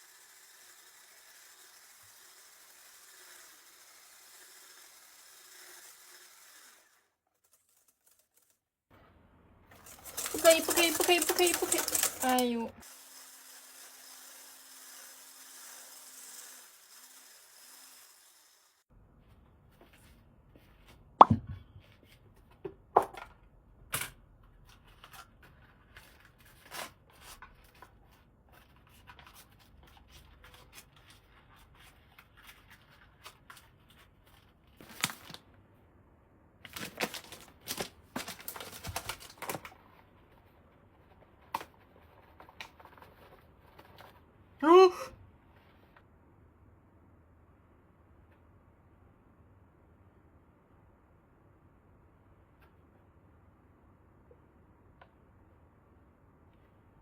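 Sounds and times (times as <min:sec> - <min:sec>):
objects being handled: 0:09.7 - 0:12.8, 0:36.7 - 0:44.3.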